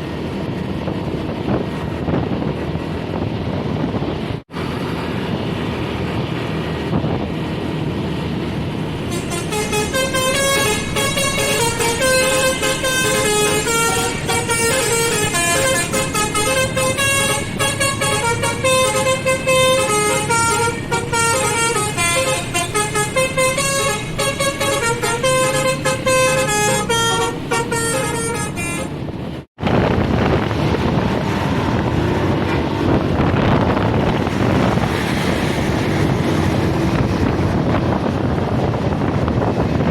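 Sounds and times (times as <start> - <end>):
engine and road noise: 0.0 - 39.9
wind noise: 0.0 - 39.9
musical bus horn playing a tune: 9.0 - 29.2.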